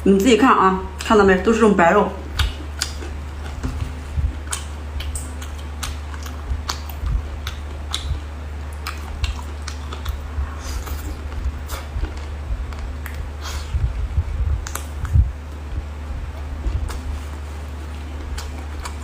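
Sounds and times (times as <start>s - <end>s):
steady low hum: 0.0s - 19.0s
wet squishing of food: 2.2s - 13.7s, 16.3s - 19.0s.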